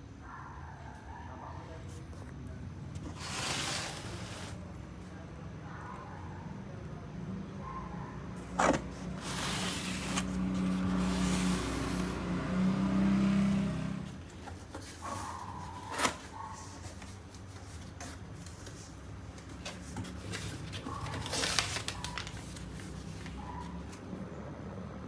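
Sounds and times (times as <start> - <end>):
scraping and rubbing: 3.0 - 4.6, 8.4 - 12.4.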